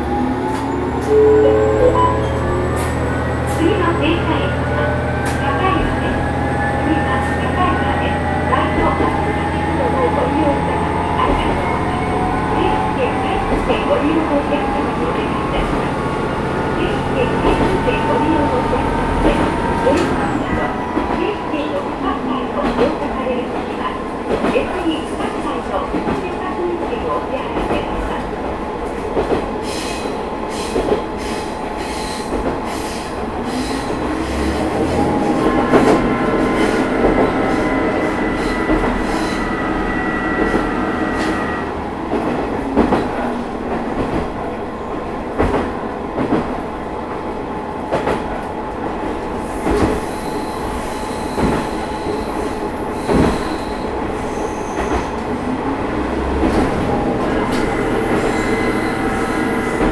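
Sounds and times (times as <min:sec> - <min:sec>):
train running rumble: 0:00.0 - 0:59.9
rail-joint clicks: 0:00.4 - 0:10.2, 0:17.0 - 0:41.5, 0:51.0 - 0:53.9
high wheel squeal: 0:50.0 - 0:55.2.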